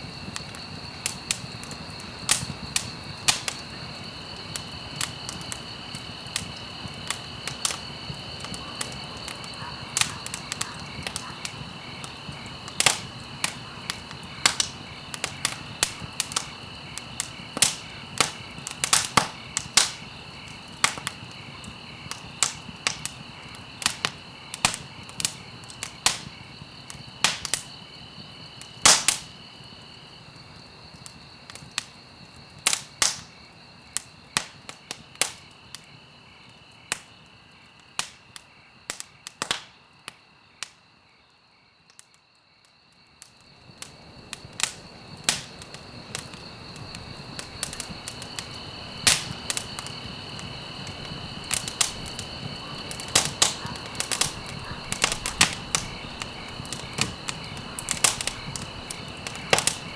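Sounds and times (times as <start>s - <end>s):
wood fire crackling: 0.0s - 40.8s, 43.0s - 59.9s.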